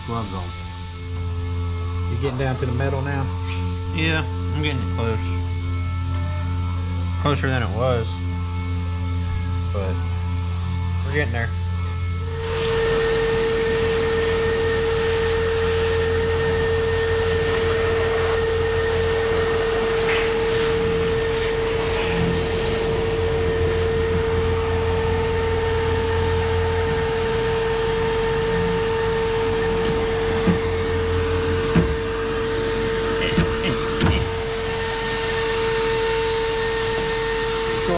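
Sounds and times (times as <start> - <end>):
electric motor whine: 0.0 - 37.9.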